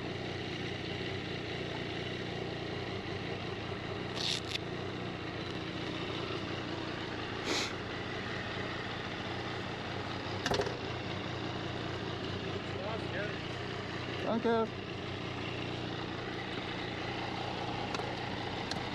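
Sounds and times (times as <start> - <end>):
motorcycle engine idling: 0.0 - 18.9
brief hissing bursts: 7.5 - 7.8.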